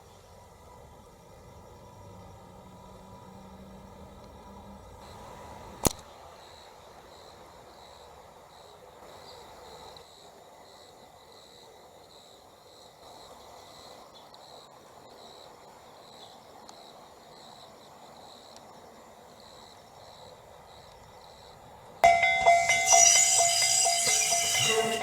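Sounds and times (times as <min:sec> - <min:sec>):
faint outdoor background noise: 0:00.0 - 0:25.0
insects chirping: 0:00.0 - 0:25.0
sharp click: 0:05.8 - 0:06.1.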